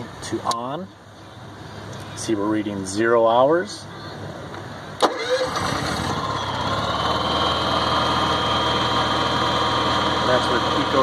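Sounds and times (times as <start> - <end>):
generator engine idling: 5.0 - 11.0.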